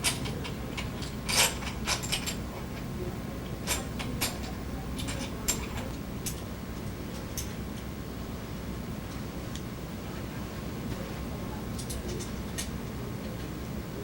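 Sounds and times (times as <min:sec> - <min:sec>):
metallic clicks and clacks: 0:00.0 - 0:06.5
steady low hum: 0:00.0 - 0:14.0.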